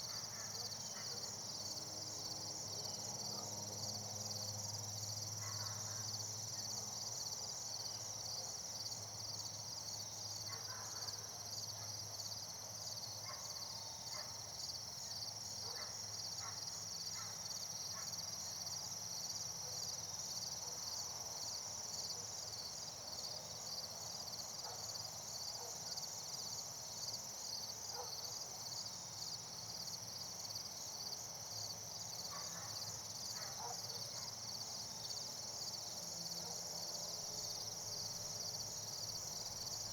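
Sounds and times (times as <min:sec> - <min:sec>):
crickets trilling: 0:21.4 - 0:39.9.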